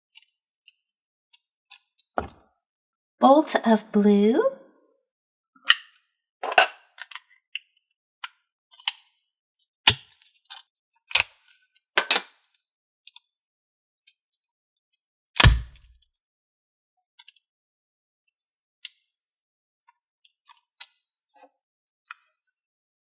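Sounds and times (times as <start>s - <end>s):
dull thud: 15.4s - 15.9s.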